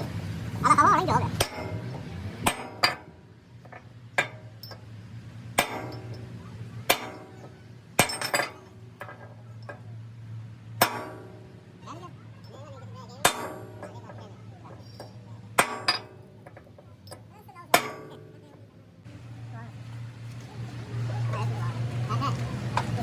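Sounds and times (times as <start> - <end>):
hammer striking metal: 1.3 - 4.9, 5.5 - 9.9, 10.8 - 11.7, 13.2 - 18.6.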